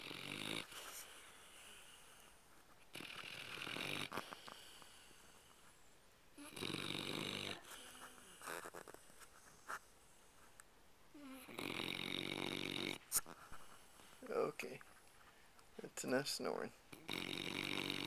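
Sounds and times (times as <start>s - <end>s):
dog snoring: 0.0s - 2.3s, 2.9s - 5.5s, 6.4s - 9.1s, 11.2s - 13.1s, 16.9s - 18.0s.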